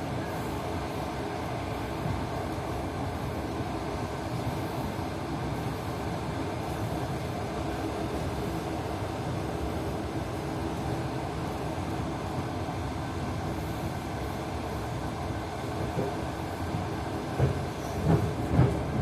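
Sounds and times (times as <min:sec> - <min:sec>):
train wheels rumbling on rails: 0:00.0 - 0:19.0.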